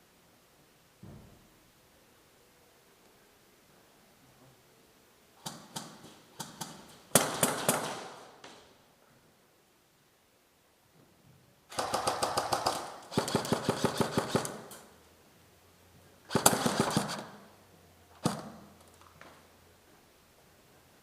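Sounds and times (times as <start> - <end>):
airsoft guns firing: 5.4 - 8.6, 11.7 - 14.9, 16.3 - 17.5, 18.2 - 18.7.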